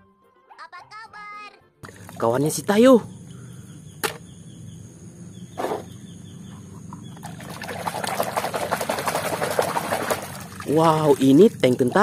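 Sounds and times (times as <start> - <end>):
water splashing and sloshing: 1.8 - 2.4, 7.1 - 12.0.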